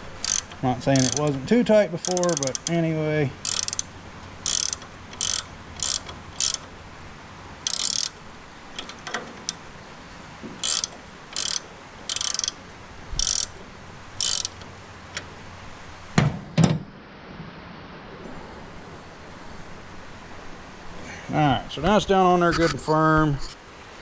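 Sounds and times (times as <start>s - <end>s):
hand ratchet clicking: 0.0s - 6.7s, 7.6s - 8.2s, 8.8s - 9.6s, 10.6s - 12.6s, 13.2s - 13.6s, 14.2s - 15.3s.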